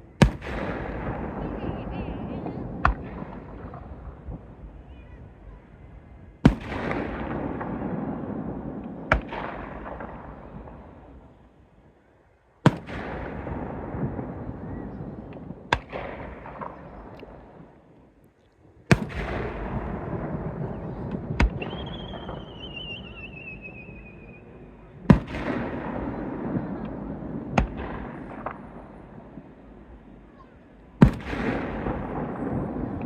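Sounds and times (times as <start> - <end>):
fireworks booms: 0.0 - 11.6, 12.7 - 18.0, 18.9 - 33.0
crackle and rumble: 0.0 - 33.0
high wavering whistle: 21.6 - 24.5.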